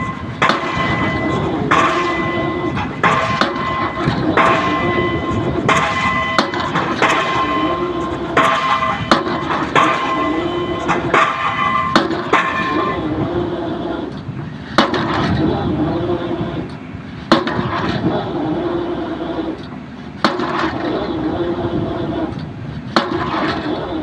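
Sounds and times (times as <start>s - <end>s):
diesel engine drone: 0.0s - 24.0s
drop hammer striking pile: 8.4s - 13.0s.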